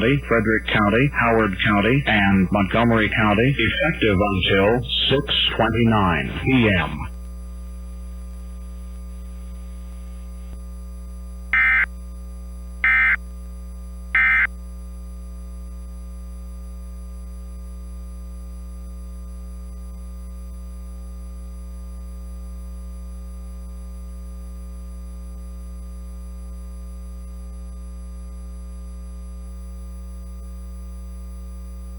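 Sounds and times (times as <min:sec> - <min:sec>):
steady electrical hum: 0:00.0 - 0:18.9
digital data bursts: 0:11.6 - 0:11.9, 0:12.8 - 0:13.2, 0:14.2 - 0:14.5.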